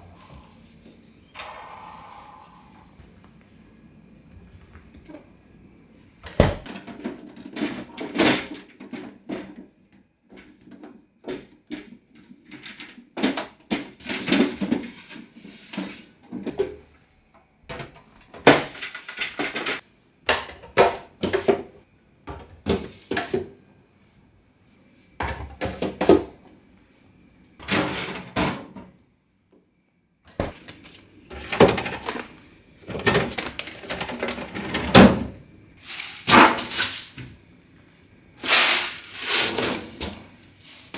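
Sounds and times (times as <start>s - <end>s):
refrigerator shelves clattering: 0.0s - 3.2s, 6.1s - 7.0s, 30.3s - 37.4s, 38.4s - 40.9s
drawer thunks: 6.2s - 6.7s, 35.9s - 37.1s.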